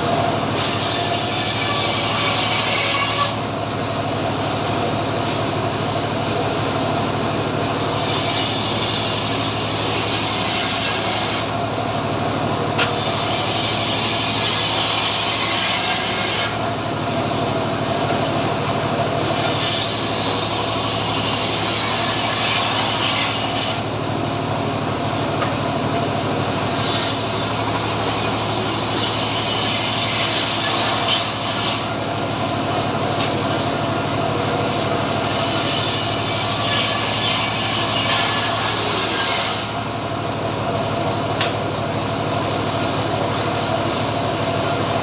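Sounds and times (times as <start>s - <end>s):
sawmill engine humming: 0.0s - 45.0s
saw blade rasping through wood: 0.5s - 3.4s, 7.8s - 11.6s, 12.8s - 16.7s, 19.2s - 23.9s, 26.6s - 32.0s, 35.2s - 39.8s.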